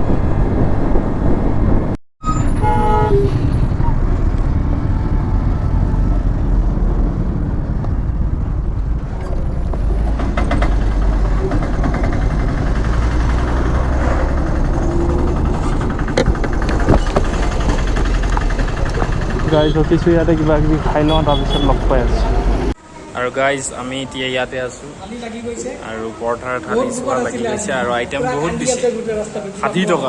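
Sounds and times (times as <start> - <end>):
motorcycle engine rumble: 0.0 - 22.8.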